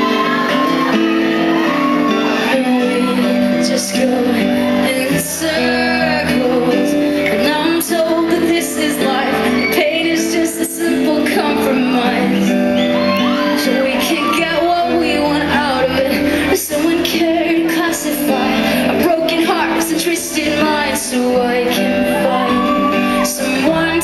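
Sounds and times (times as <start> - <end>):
acoustic guitars: 0.0 - 24.0
woman singing: 0.0 - 24.0.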